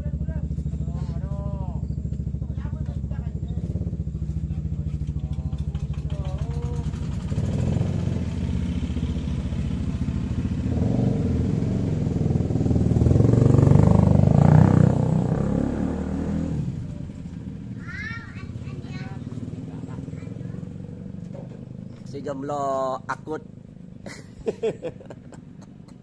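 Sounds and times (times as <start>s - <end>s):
small engine running: 0.0s - 14.6s.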